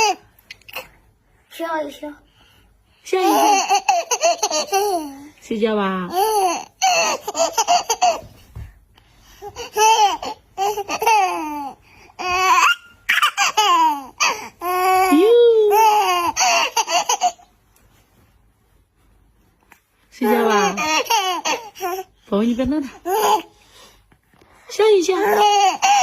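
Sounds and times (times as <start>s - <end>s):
baby laughing: 0.0s - 0.9s, 3.2s - 5.3s, 6.1s - 8.4s, 9.4s - 17.5s, 20.2s - 22.1s, 25.2s - 26.0s.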